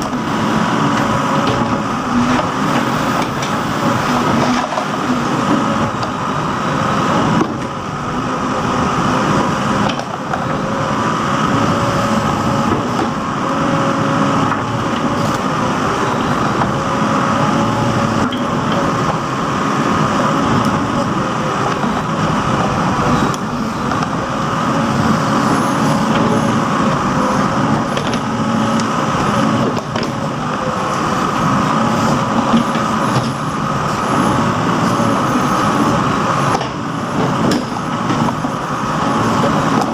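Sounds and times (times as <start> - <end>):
diesel engine running: 0.0 - 39.9
steady whine: 0.0 - 39.9.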